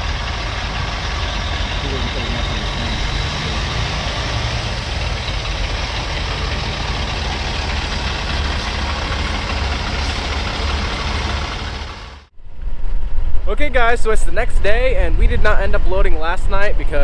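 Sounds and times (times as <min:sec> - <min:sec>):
large engine running: 0:00.0 - 0:12.4.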